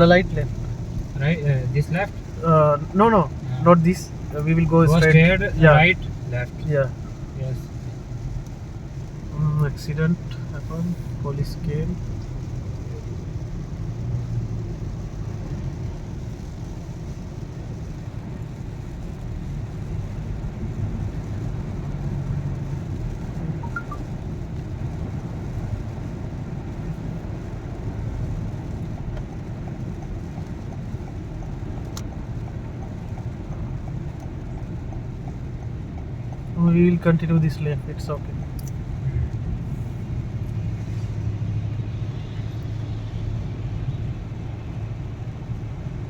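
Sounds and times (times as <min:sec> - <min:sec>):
car engine rumble and road noise: 0:00.0 - 0:46.0.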